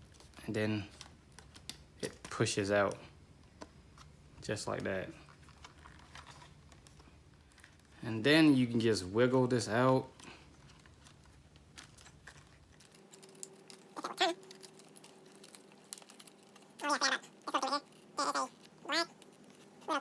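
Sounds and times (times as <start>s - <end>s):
cat meowing: 16.8s - 19.1s.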